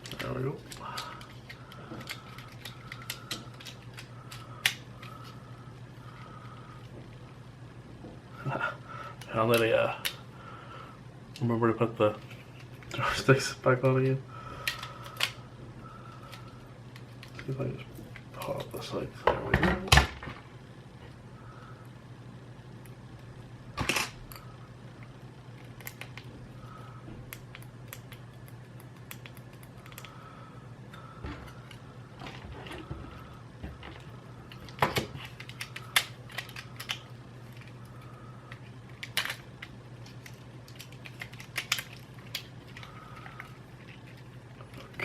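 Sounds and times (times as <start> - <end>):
steady low hum: 0.0 - 45.0
plastic controller parts clicking: 38.5 - 43.5.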